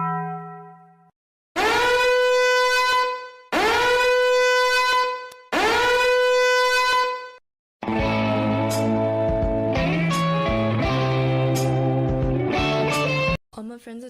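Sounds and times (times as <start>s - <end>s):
blown horn blasts: 1.6s - 7.4s
music: 7.8s - 13.4s.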